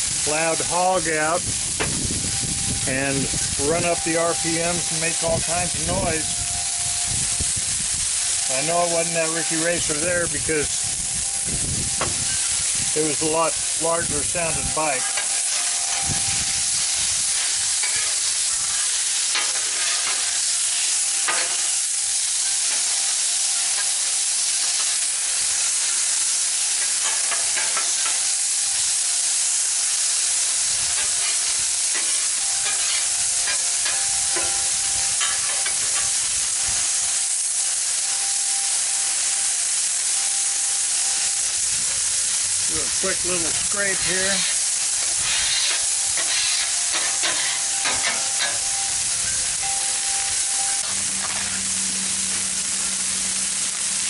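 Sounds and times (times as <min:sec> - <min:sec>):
food sizzling on a griddle: 0:00.0 - 0:54.0
spatulas scraping on steel: 0:12.2 - 0:16.1, 0:16.8 - 0:21.9, 0:30.9 - 0:36.2, 0:43.1 - 0:50.2.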